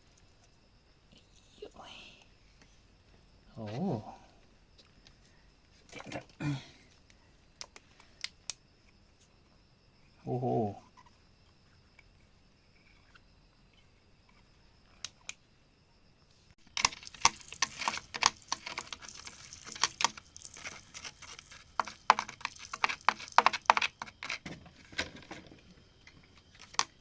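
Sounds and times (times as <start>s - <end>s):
small stones knocking: 16.7s - 24.5s
scraping rock and grit: 16.8s - 24.8s.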